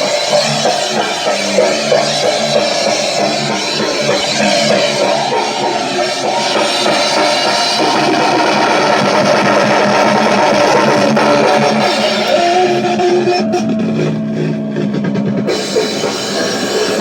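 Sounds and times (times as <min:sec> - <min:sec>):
distorted electric guitar: 0:00.0 - 0:17.0
drum kit playing: 0:00.0 - 0:17.0.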